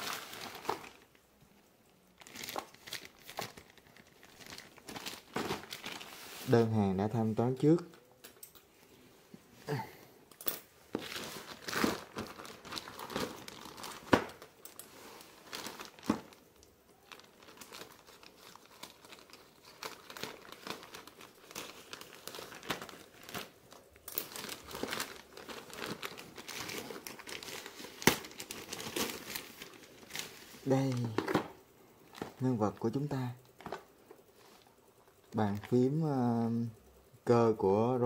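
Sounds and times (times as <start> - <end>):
plastic packaging crinkling: 0.0 - 1.2, 2.1 - 7.4, 10.9 - 34.6.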